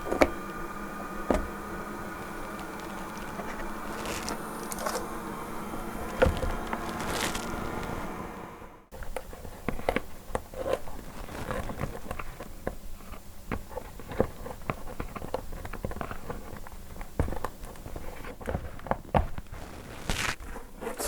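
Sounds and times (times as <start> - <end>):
hand tools clicking and scraping: 0.0 - 8.1.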